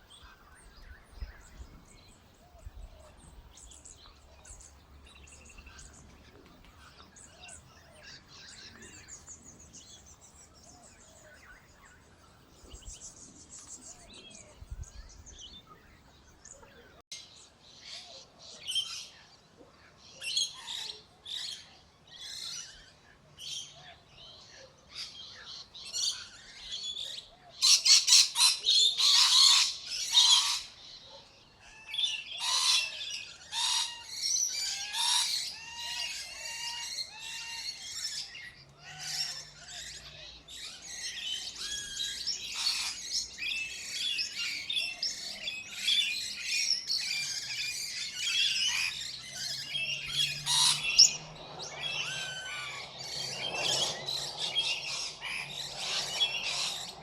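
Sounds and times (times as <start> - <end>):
birds chirping and squawking: 20.1 - 57.0.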